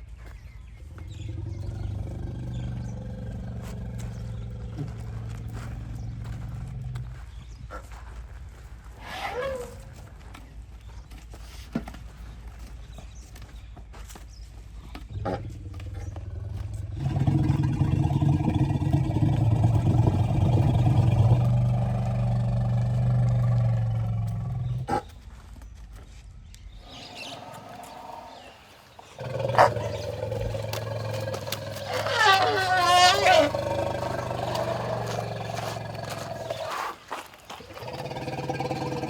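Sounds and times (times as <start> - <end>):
elephant low rumble: 0.8 - 7.7, 15.0 - 25.1, 26.4 - 39.0.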